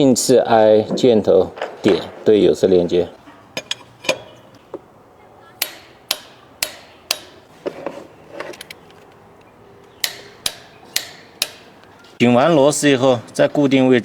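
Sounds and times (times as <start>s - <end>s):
metallic taps of hand tools: 5.6s - 7.4s, 8.5s - 11.9s.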